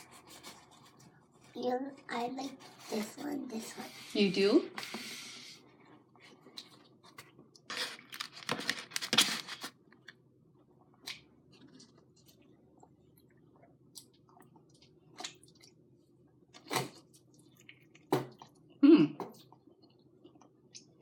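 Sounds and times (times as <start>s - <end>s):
chewing and mouth noises: 16.5s - 21.0s.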